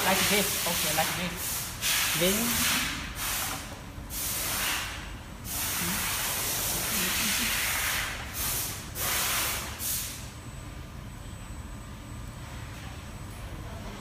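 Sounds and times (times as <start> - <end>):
compressed air hissing: 0.0 - 10.3.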